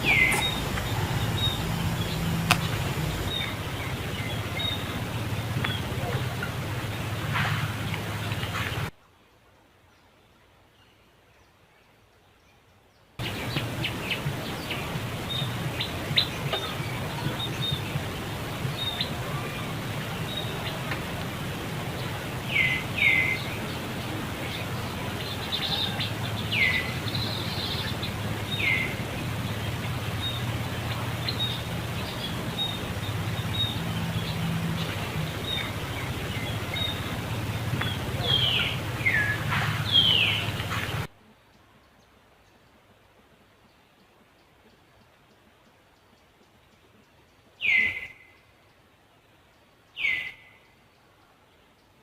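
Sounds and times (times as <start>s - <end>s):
steady low hum: 0.0s - 8.9s, 13.2s - 41.1s.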